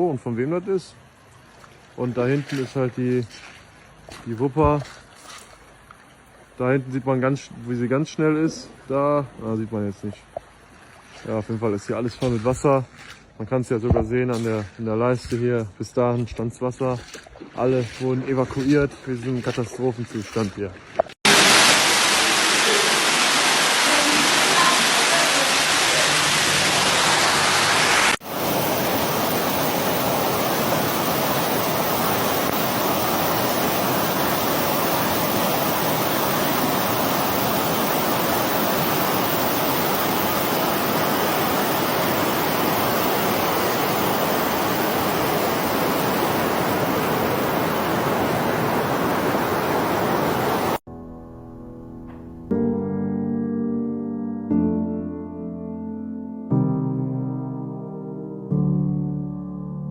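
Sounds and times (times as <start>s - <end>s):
rushing floodwater: 1.3s - 6.9s, 16.8s - 50.8s.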